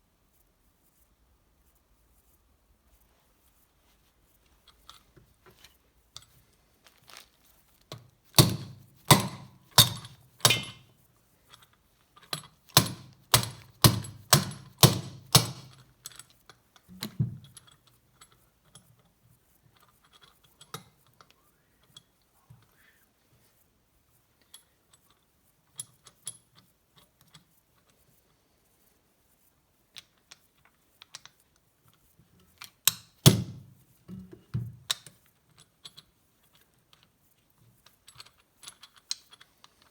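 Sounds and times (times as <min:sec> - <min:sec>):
small clicks of parts handled: 0:04.5 - 0:08.2, 0:08.8 - 0:22.8, 0:29.9 - 0:39.9
hammer tapping metal: 0:08.4 - 0:10.9, 0:12.7 - 0:15.8.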